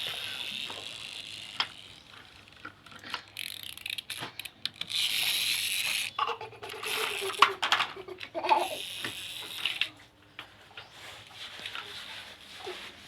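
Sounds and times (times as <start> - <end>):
toy motor and gears whirring: 0.0 - 10.0.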